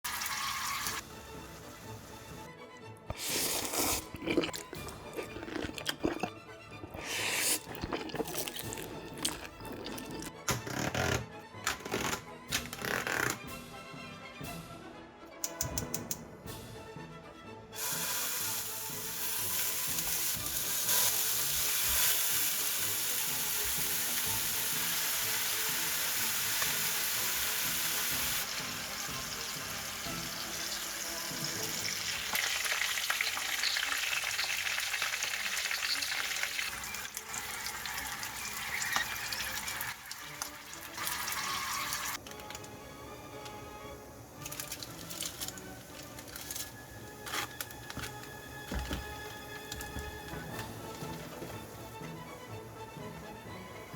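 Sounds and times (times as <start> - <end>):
food sizzling in a pan: 0.1 - 2.4, 17.8 - 42.2.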